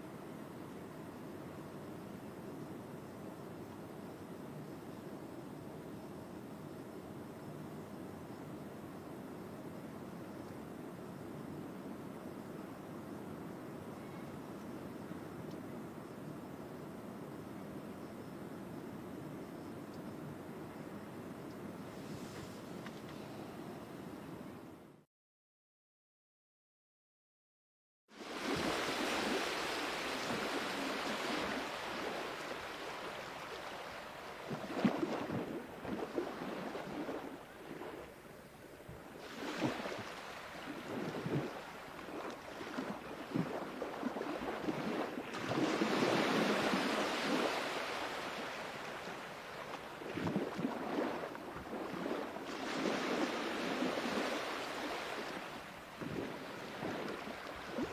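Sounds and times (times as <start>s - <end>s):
sea waves washing ashore: 28.1s - 57.9s.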